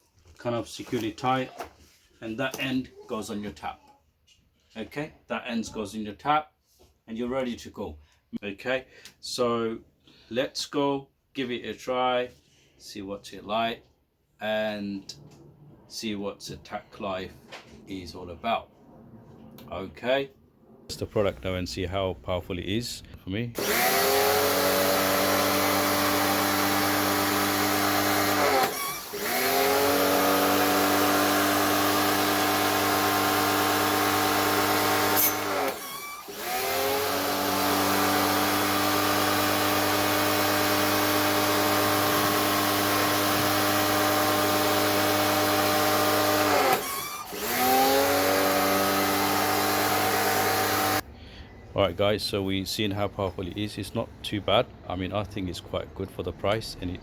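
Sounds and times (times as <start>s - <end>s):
pressure washer motor and spray: 23.6s - 51.0s.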